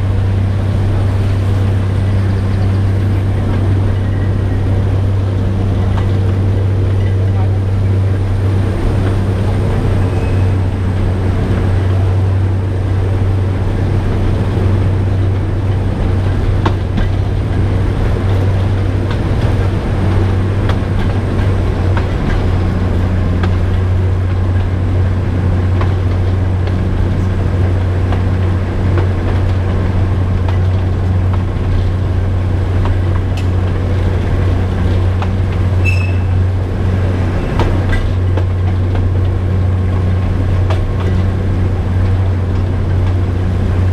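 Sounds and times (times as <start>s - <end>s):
diesel locomotive drone: 0.0s - 43.9s
wheels clicking on track: 0.0s - 43.9s
brief high squeak: 10.1s - 10.6s, 35.8s - 36.3s.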